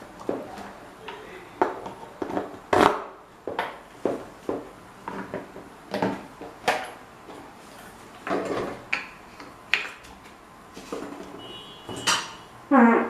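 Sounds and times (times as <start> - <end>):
fan parts and tools handled: 3.5 - 12.4.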